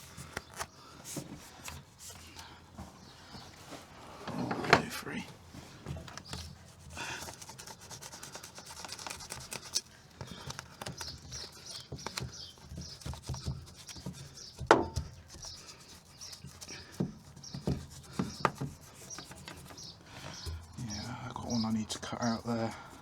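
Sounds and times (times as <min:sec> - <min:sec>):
adhesive sheet rustling and scratching: 0:00.0 - 0:02.3, 0:06.0 - 0:17.4.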